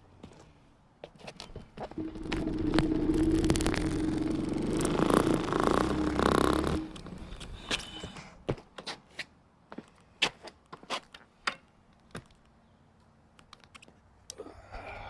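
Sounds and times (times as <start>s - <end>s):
electric scooter motor clicking: 2.0s - 8.3s.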